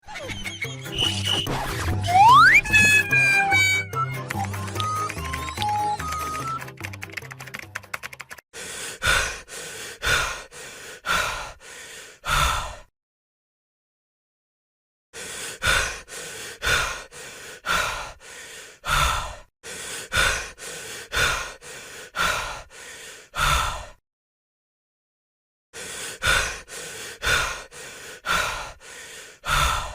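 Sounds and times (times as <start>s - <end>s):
heavy human breathing: 8.5s - 12.9s, 15.2s - 24.0s, 25.8s - 29.9s.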